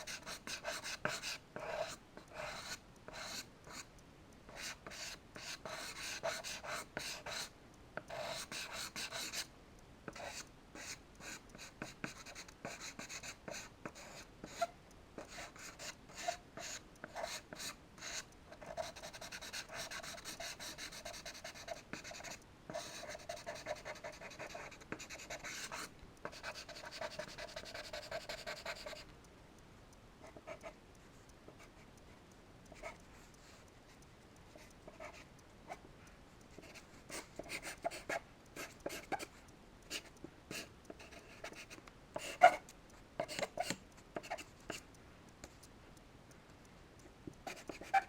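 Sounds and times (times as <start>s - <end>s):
charcoal scratching on paper: 4.6s - 9.5s, 11.6s - 29.0s, 47.5s - 48.0s.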